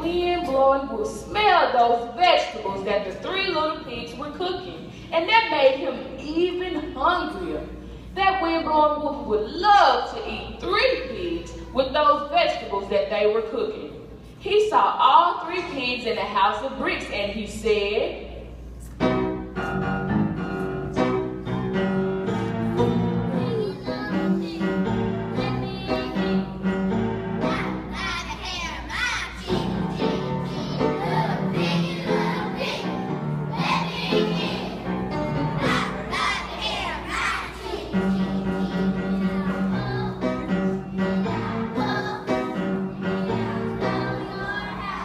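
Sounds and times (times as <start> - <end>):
piano playing chords: 19.0 - 45.0
children singing: 29.3 - 45.0.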